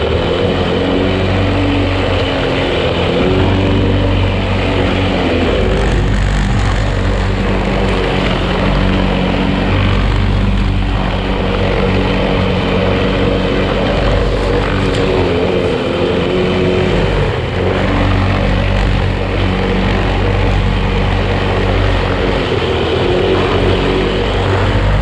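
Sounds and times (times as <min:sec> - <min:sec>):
lawn mower engine cutting grass: 0:00.0 - 0:25.0.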